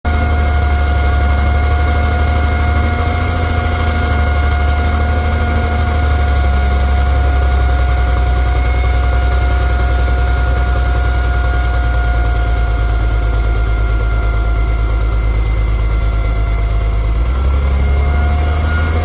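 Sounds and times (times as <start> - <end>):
excavator diesel rumble: 0.0 - 19.0
high whine: 0.0 - 19.0.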